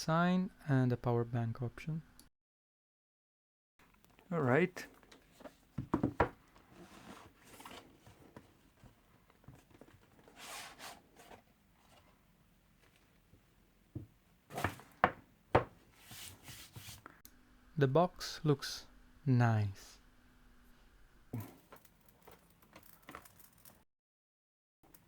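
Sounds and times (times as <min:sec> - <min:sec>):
knocks on cardboard box: 0:05.8 - 0:06.4, 0:14.0 - 0:15.8
soft rubbing of cardboard: 0:06.6 - 0:12.2, 0:15.8 - 0:17.1
sliding scrape: 0:10.2 - 0:12.0.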